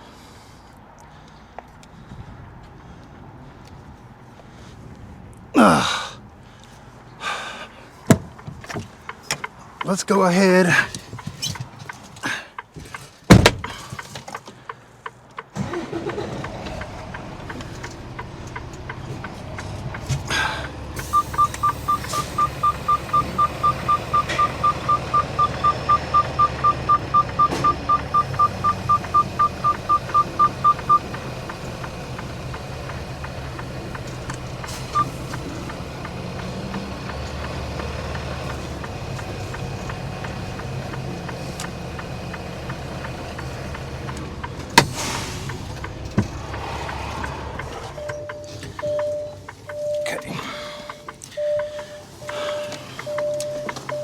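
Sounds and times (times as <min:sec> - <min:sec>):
diesel engine idling: 0:14.6 - 0:54.0
truck warning beeper: 0:20.4 - 0:40.8, 0:47.6 - 0:54.0.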